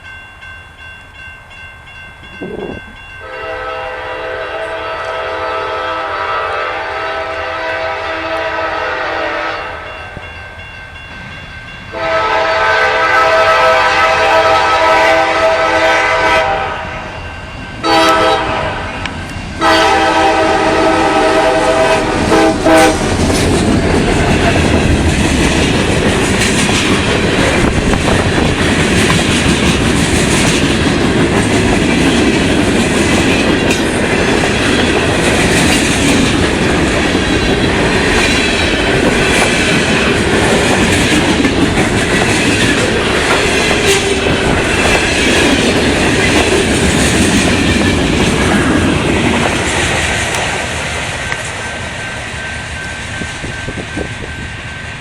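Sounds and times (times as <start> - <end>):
train cars rolling on rails: 0.0 - 55.0
locomotive air horn blasts: 3.2 - 9.9, 11.9 - 17.1, 17.8 - 19.0, 19.6 - 23.1.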